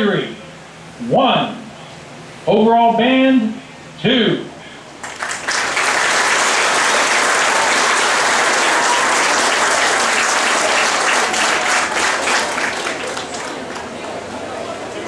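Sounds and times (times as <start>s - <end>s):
crowd applauding: 5.0s - 15.0s.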